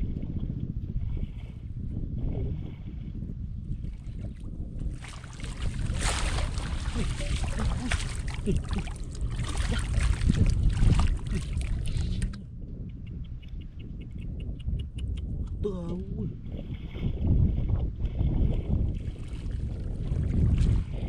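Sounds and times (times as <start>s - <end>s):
wind rumble on microphone: 0.0s - 21.0s
water sloshing and splashing: 3.7s - 12.4s, 16.5s - 21.0s.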